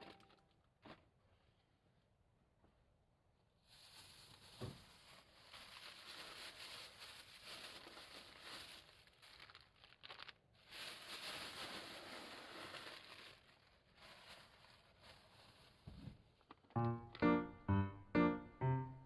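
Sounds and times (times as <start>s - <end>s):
dry crinkling and rustling: 3.7s - 16.8s.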